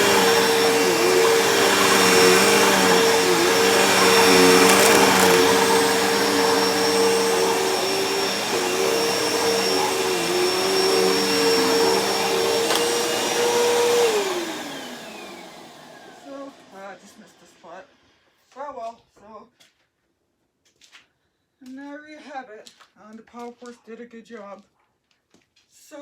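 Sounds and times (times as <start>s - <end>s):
vacuum motor spinning down: 0.0s - 16.7s
vacuum cleaner running: 0.0s - 17.7s.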